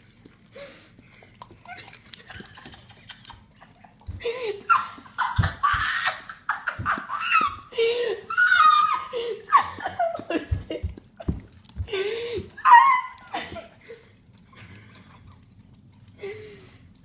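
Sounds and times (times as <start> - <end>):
person laughing: 1.8 - 11.4, 12.7 - 13.8.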